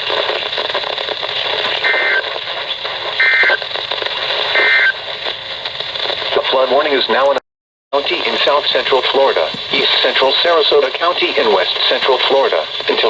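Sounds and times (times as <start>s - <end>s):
radio static: 0.0s - 13.0s
two-tone data buzz bursts: 1.8s - 2.4s, 3.1s - 3.6s, 4.5s - 5.0s.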